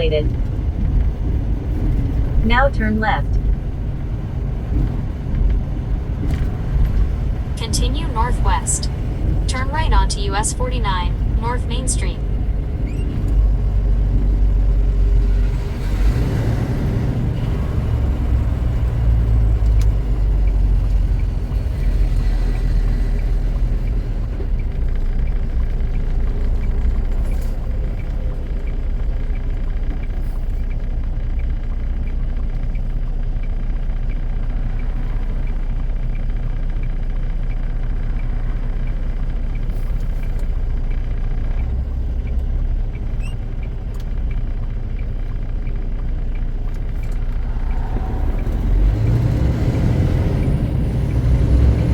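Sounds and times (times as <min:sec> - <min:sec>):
truck engine and road noise: 0:00.0 - 0:51.9
faint clicks: 0:23.2 - 0:48.6.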